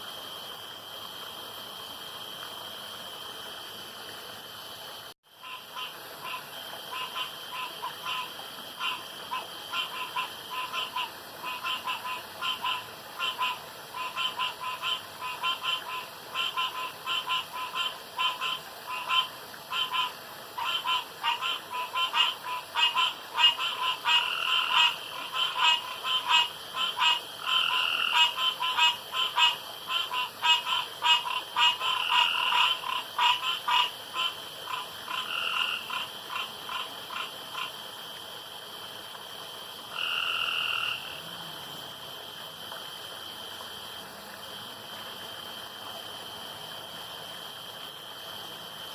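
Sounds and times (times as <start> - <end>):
long steady frog call: 0.0 - 48.9
frogs croaking in chorus: 5.3 - 38.0, 39.8 - 42.9.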